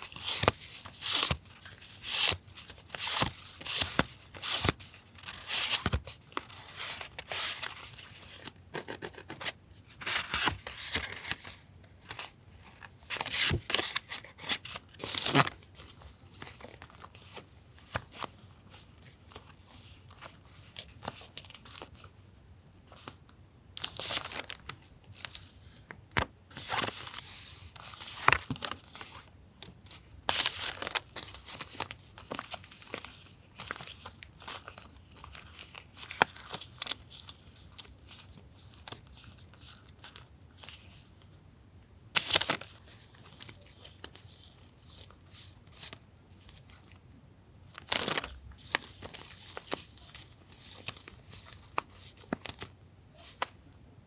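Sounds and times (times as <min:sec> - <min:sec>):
paper rustling and tearing: 0:00.0 - 0:12.3.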